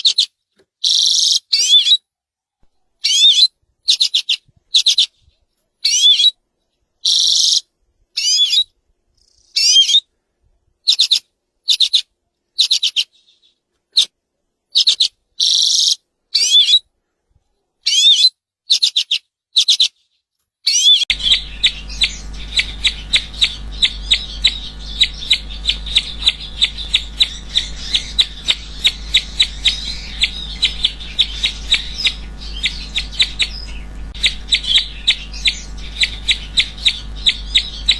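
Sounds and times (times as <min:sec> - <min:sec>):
rapid high bird chirps: 0:21.1 - 0:37.9
songbird singing: 0:21.1 - 0:37.9
steady low hum: 0:21.1 - 0:37.9.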